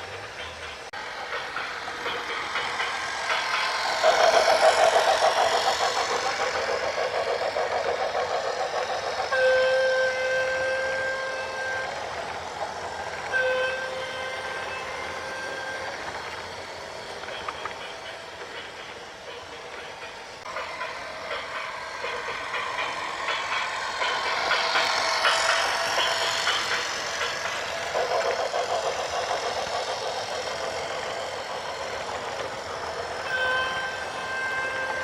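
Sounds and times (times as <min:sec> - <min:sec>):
horn blasts: 0:09.3 - 0:11.9, 0:13.3 - 0:15.9, 0:33.2 - 0:35.0.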